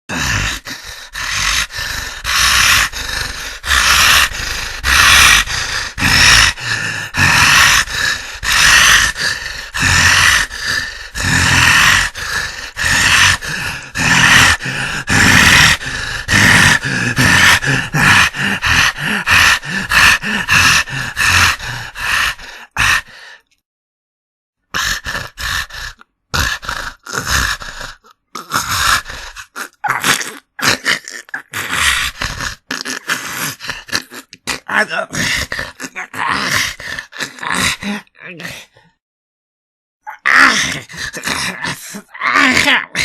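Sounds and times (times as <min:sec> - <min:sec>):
low growl: 0:00.1 - 0:23.1, 0:40.1 - 0:43.0
beast panting and choking gasps: 0:00.1 - 0:23.6, 0:24.7 - 0:38.9, 0:40.3 - 0:43.0.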